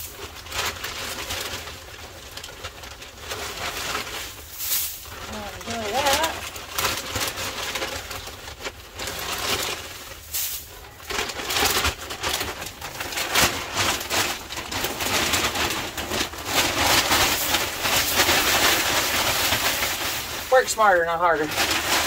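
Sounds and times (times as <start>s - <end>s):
hands crunching wood chips and snow: 0.0s - 22.0s.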